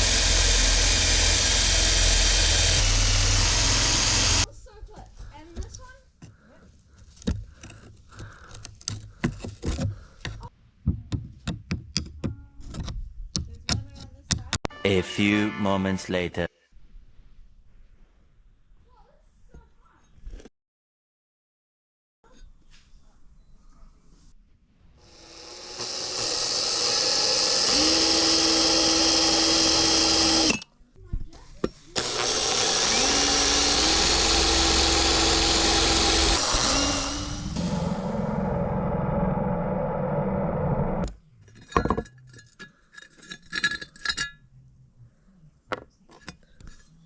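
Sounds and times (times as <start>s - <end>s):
power tool whirring: 0.0s - 4.5s, 25.0s - 30.6s, 32.0s - 41.1s
steady hum: 35.6s - 41.1s.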